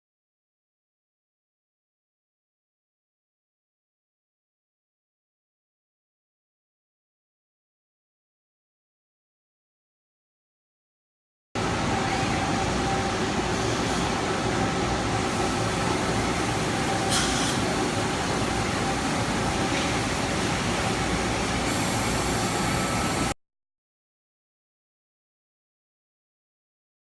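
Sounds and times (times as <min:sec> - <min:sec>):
machinery running: 0:11.6 - 0:23.4.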